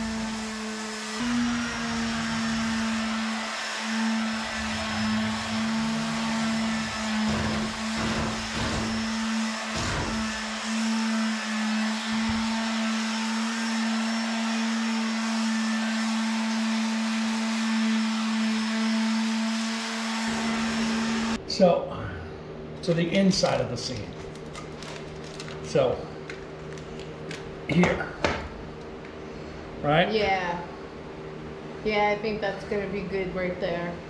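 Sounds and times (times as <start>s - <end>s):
small electric motor humming: 0.0s - 21.4s.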